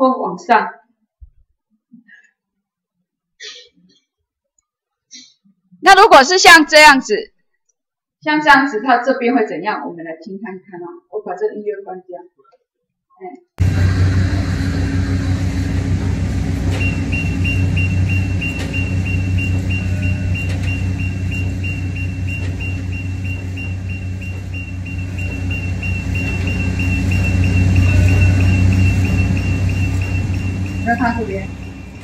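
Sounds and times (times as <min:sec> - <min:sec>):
high beeping: 0:13.6 - 0:32.0
train low rumble: 0:13.6 - 0:32.0.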